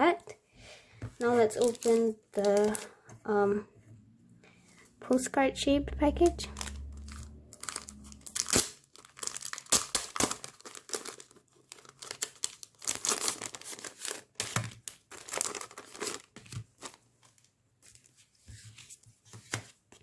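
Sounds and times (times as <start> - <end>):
packaging torn and crinkled: 1.5 - 2.9, 6.5 - 17.4.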